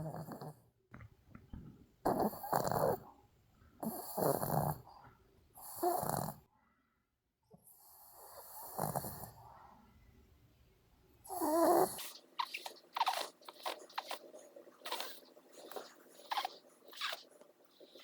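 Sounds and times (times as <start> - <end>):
dog snoring: 0.0 - 0.6, 2.0 - 3.1, 3.8 - 4.9, 5.6 - 6.5, 7.6 - 9.4, 11.2 - 18.0.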